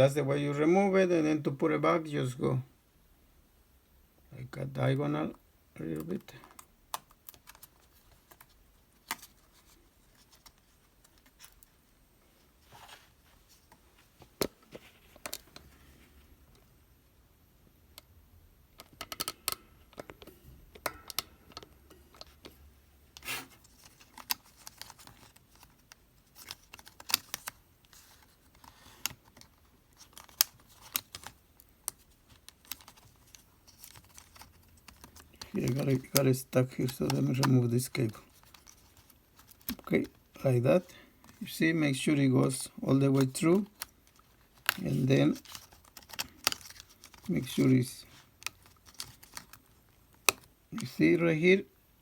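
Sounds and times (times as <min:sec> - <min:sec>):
small clicks and taps of parts: 0:06.0 - 0:09.3, 0:18.8 - 0:23.2, 0:45.4 - 0:47.3, 0:48.4 - 0:50.5.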